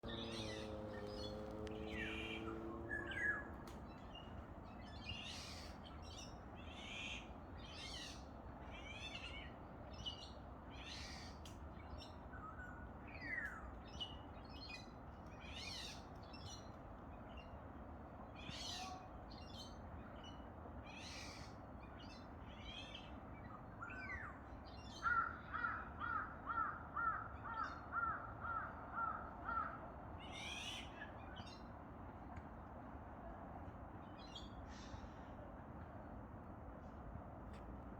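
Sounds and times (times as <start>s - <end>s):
birds chirping: 0.0s - 4.4s.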